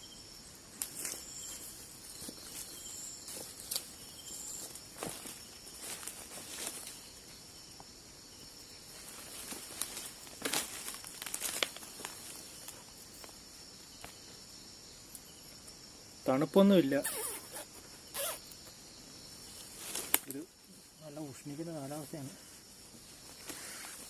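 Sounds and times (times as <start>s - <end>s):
crickets chirring: 0.0s - 24.0s
rustles on dry leaves: 0.9s - 7.3s, 8.9s - 13.3s, 19.5s - 24.0s.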